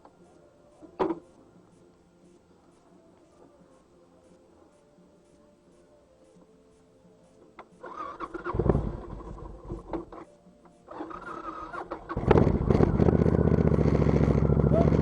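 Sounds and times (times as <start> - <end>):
motorcycle electric starter cranking: 7.8 - 10.2, 10.9 - 15.0
motorcycle engine running: 8.2 - 10.1, 11.0 - 15.0.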